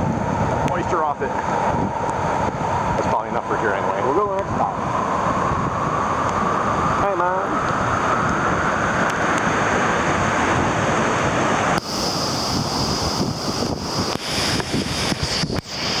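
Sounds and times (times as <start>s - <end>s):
wind buffeting microphone: 0.0s - 16.0s
waterfall rushing: 11.8s - 16.0s.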